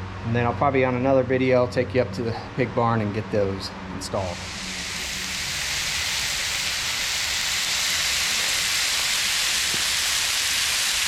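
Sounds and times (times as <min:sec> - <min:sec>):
sizzling on a griddle: 0:04.3 - 0:11.0.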